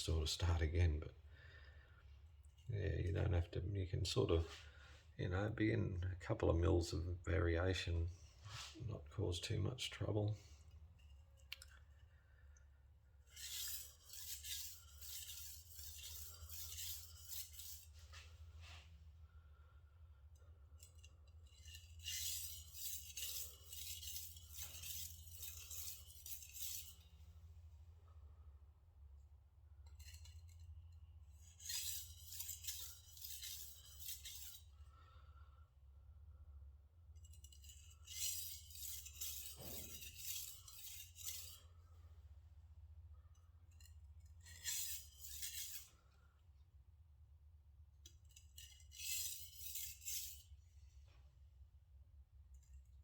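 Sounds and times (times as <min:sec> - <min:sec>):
knife scraping on whetstone: 0:13.3 - 0:18.8, 0:20.8 - 0:27.2, 0:29.9 - 0:30.7, 0:31.3 - 0:34.7, 0:37.2 - 0:41.7, 0:43.7 - 0:46.0, 0:48.2 - 0:50.6.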